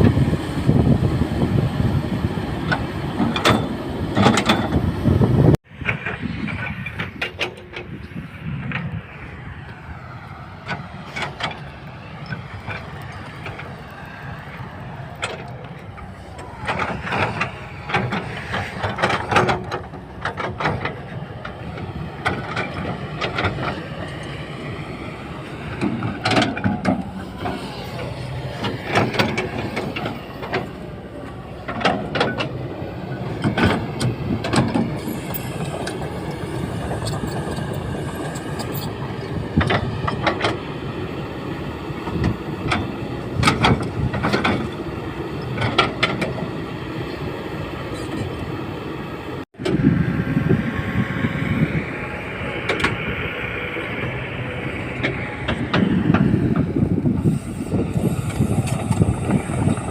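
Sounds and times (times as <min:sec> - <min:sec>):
excavator engine and hydraulics: 0:00.0 - 0:59.9.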